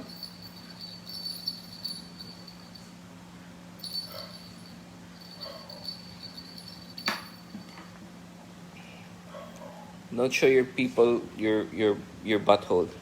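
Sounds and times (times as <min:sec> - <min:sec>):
small bell jingling: 0:00.0 - 0:03.0, 0:03.8 - 0:07.9.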